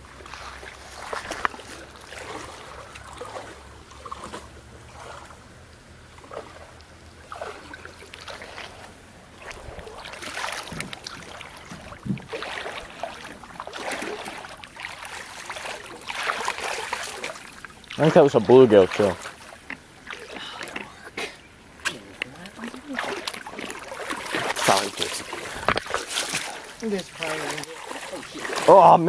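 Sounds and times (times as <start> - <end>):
creek water splashing: 0.0 - 29.0
handling knocks and rustles: 24.3 - 27.8.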